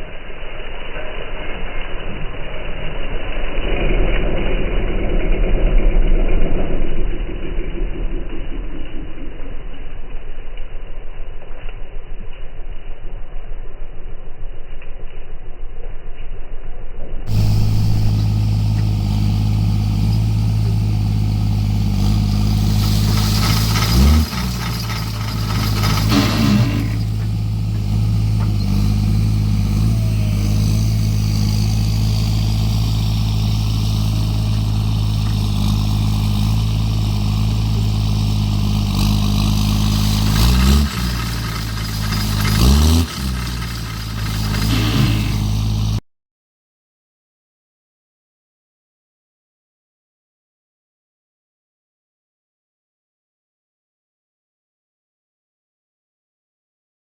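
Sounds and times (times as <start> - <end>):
rushing noise: 0.0 - 14.0, 17.3 - 20.1, 39.6 - 46.0
farm machinery engine running: 17.3 - 46.0.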